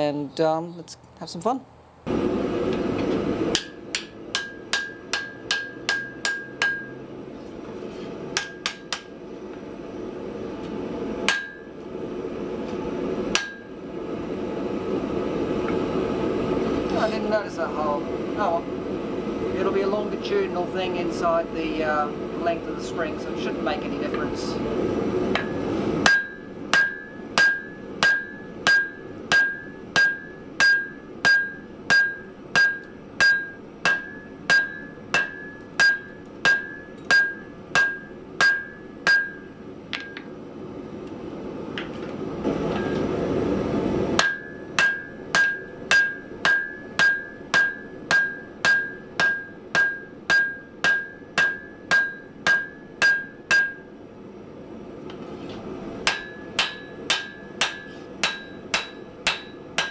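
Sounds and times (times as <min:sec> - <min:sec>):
hammer ringing on steel over anvil: 0:03.5 - 0:07.0, 0:08.4 - 0:09.1, 0:11.3 - 0:11.8, 0:13.3 - 0:13.7, 0:25.4 - 0:40.3, 0:44.2 - 0:53.9, 0:56.1 - 0:59.9.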